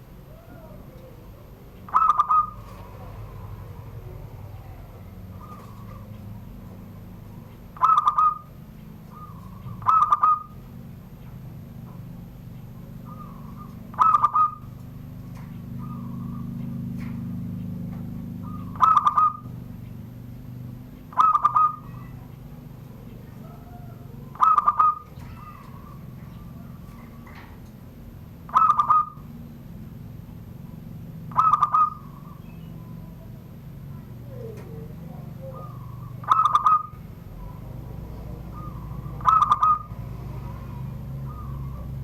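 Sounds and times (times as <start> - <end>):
dove staccato cooing: 0.0 - 42.0.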